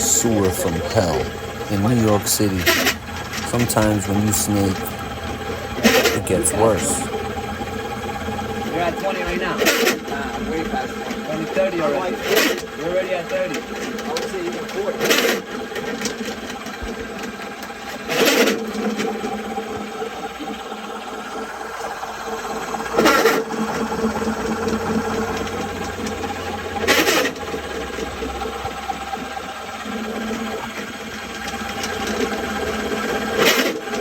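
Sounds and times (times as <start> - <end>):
drain cleaning machine running: 0.0 - 15.2, 23.5 - 34.0.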